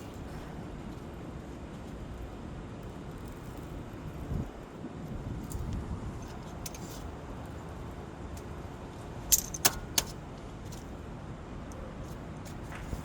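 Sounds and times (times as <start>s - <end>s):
steady background noise: 0.0s - 13.0s
metallic clinks of tools: 9.3s - 10.2s.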